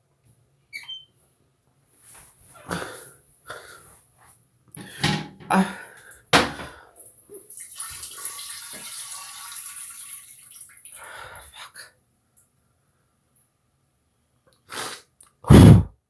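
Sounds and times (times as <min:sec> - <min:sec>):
person sneezing: 0:14.7 - 0:15.9
sharp breaths: 0:15.5 - 0:15.9.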